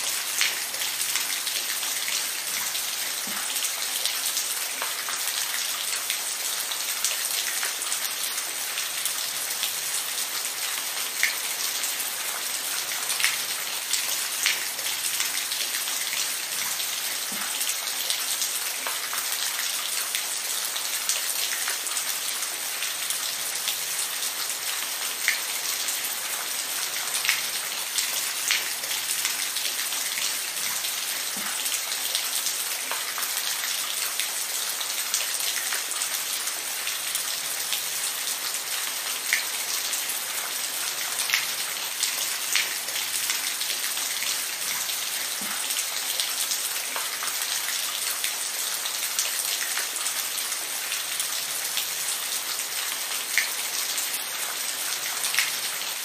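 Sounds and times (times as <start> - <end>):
steady rain falling: 0.0 - 56.0.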